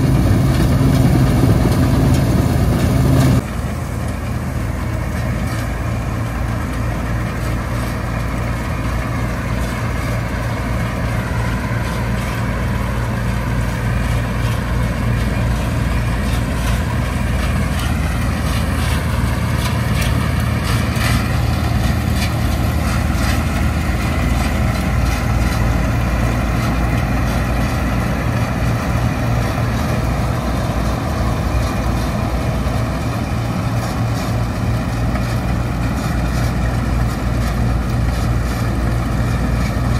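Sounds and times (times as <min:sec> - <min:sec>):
combine harvester diesel engine: 0:00.0 - 0:39.9.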